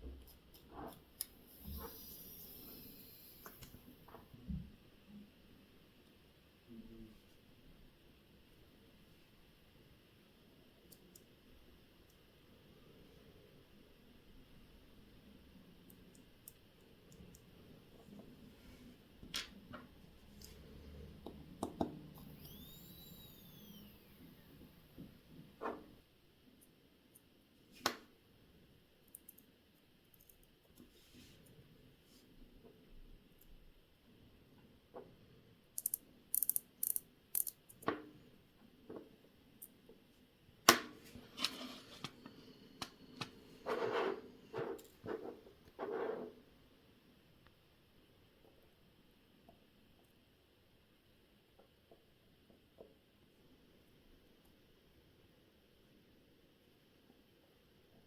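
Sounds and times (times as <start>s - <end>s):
faint high squeak: 22.2s - 24.6s
small metal tools clicking: 35.8s - 37.8s.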